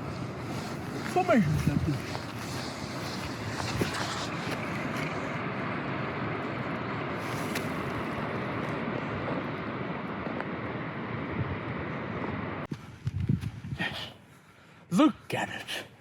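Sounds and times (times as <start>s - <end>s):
wind on microphone: 0.0s - 5.5s, 11.1s - 14.0s.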